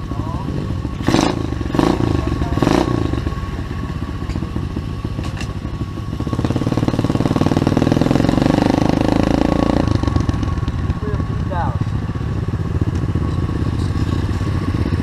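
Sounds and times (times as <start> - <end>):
small motorbike engines running: 0.0 - 15.0.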